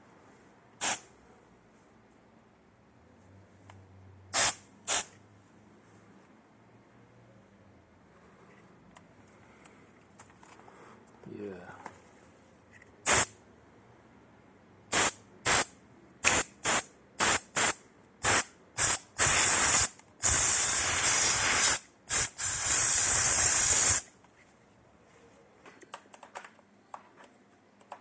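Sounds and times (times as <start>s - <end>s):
compressed air spraying: 0.8s - 1.1s, 4.4s - 5.1s, 13.1s - 13.3s, 14.9s - 24.1s.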